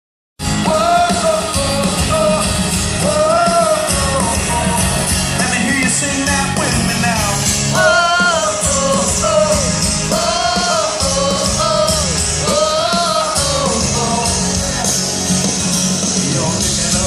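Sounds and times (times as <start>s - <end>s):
man singing lead vocals: 0.4s - 15.2s, 15.9s - 17.0s
live pop-rock band playing: 0.4s - 17.0s.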